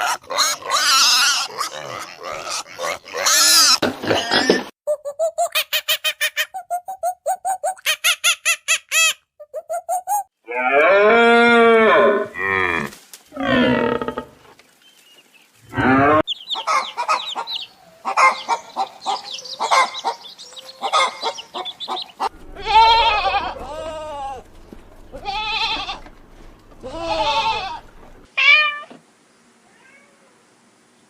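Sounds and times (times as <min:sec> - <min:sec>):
cow mooing: 0:22.3 - 0:28.2.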